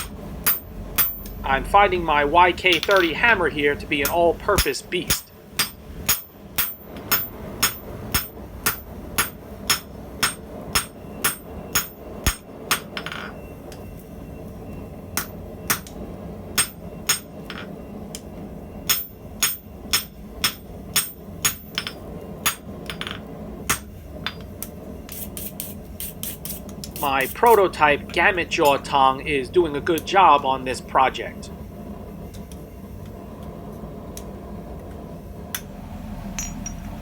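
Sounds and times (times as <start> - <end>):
hammer ringing on anvil: 18.8 - 24.5.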